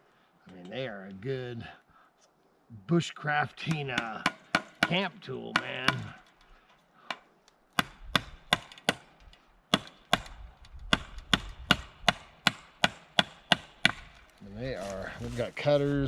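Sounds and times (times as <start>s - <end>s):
pliers hammering wood: 3.7s - 6.3s, 7.8s - 9.1s, 9.7s - 14.1s.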